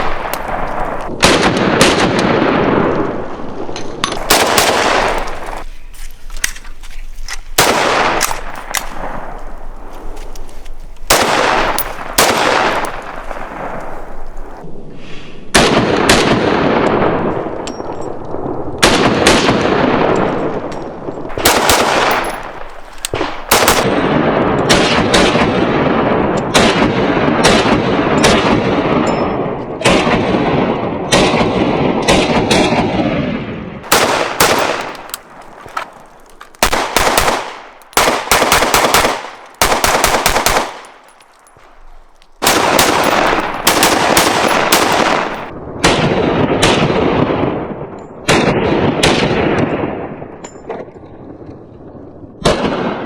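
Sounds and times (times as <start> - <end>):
gunshots echoing: 0.0 - 3.0, 4.0 - 5.7, 7.3 - 14.6, 21.3 - 29.0, 33.8 - 47.6.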